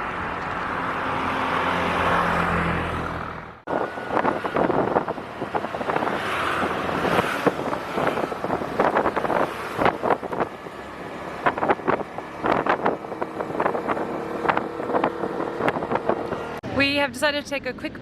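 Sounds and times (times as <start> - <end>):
wind noise: 3.7 - 16.8.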